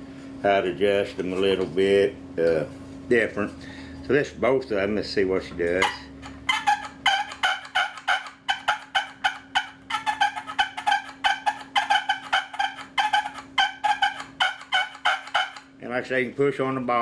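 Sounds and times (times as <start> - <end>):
turkey call clucks and purrs: 5.8 - 15.7.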